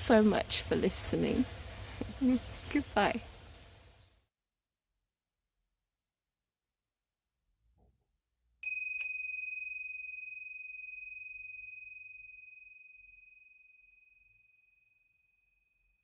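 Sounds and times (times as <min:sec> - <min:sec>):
small metal bell ringing: 0:08.6 - 0:13.7.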